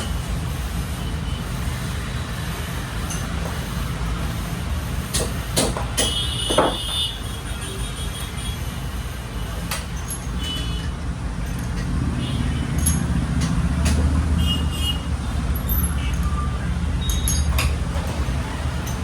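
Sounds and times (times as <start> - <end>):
high metallic ringing: 10.0 - 13.3, 14.4 - 17.8.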